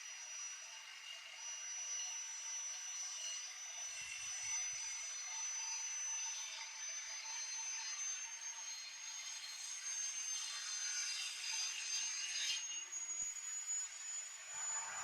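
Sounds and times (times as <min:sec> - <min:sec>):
electric saw high whine: 0:00.0 - 0:15.0.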